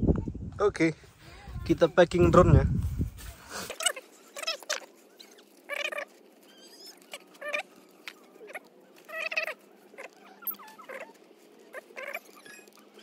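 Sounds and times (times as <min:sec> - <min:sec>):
animal squeaky calls: 0:03.7 - 0:13.0.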